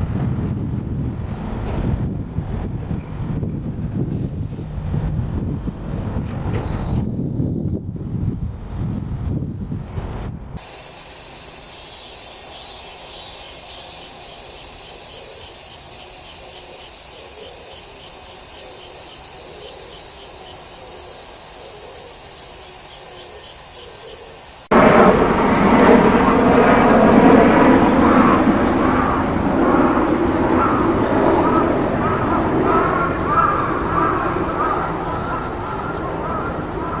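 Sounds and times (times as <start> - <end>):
insects chirping: 10.6 - 24.8
even rushing noise: 10.6 - 34.1.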